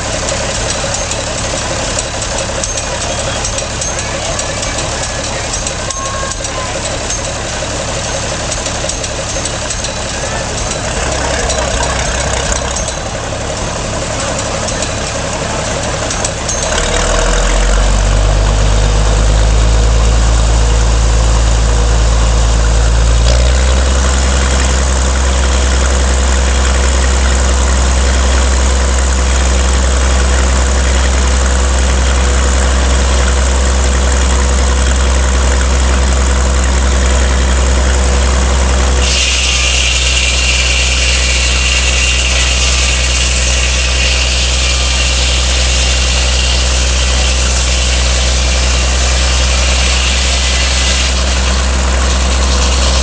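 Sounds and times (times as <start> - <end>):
sawmill engine running: 0.0 - 53.0
high whine with hiss: 39.0 - 53.0.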